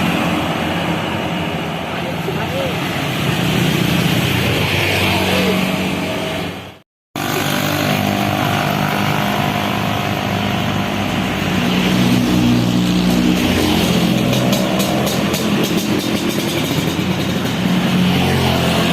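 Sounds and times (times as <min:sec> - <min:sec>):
road noise: 0:00.0 - 0:18.9
bus engine running: 0:05.3 - 0:18.9.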